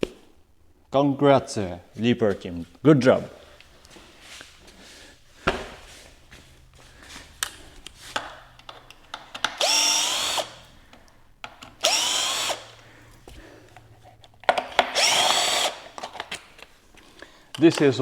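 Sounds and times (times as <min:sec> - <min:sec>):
small clicks and handling knocks: 0:07.4 - 0:09.6
power drill whining: 0:09.4 - 0:10.8, 0:11.8 - 0:12.9, 0:14.9 - 0:16.1.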